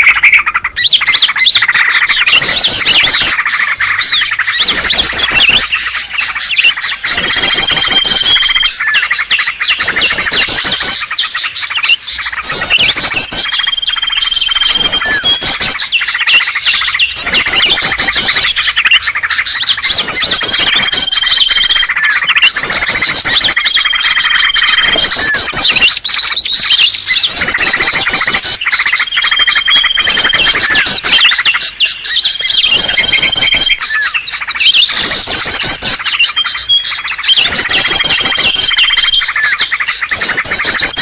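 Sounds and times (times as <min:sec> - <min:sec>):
bird chattering trills: 0:00.0 - 0:41.0
held level bird whistle: 0:00.0 - 0:41.0.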